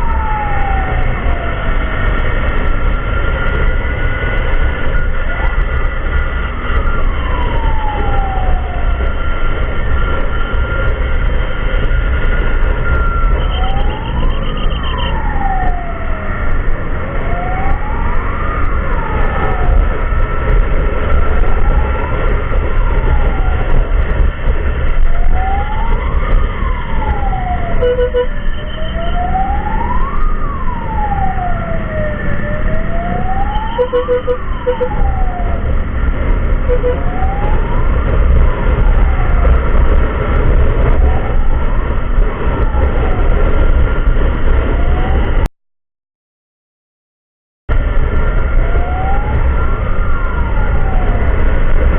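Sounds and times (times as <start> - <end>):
emergency siren wailing: 0.0 - 45.5, 47.7 - 51.9
heavy low rumble: 15.2 - 45.5, 47.7 - 51.9
short beeping tones: 27.8 - 28.3, 33.7 - 34.9, 36.7 - 37.1.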